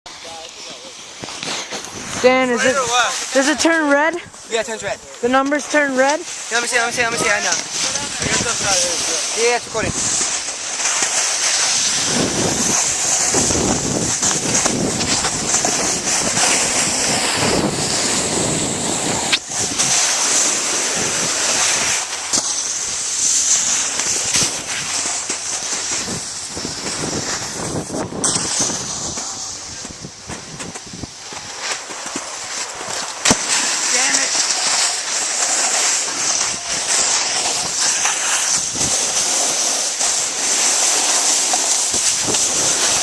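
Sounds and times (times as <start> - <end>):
high hiss: 0.1 - 43.0
wind buffeting microphone: 1.8 - 3.0, 6.8 - 10.4, 11.6 - 22.1, 22.8 - 31.6, 36.1 - 39.4.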